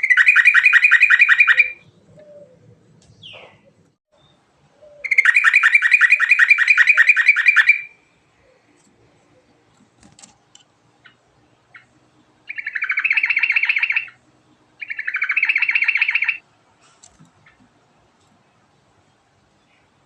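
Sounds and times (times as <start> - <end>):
bird trilling: 0.0 - 3.7, 4.8 - 8.0, 12.5 - 14.2, 14.8 - 16.4
bird chirps: 0.0 - 8.6, 11.0 - 16.4.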